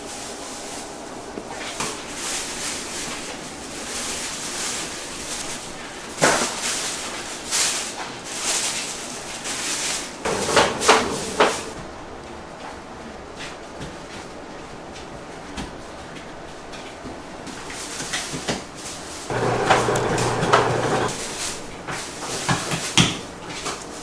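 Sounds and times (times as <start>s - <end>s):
utensils and trays clattering: 6.2s - 11.8s, 19.3s - 23.8s.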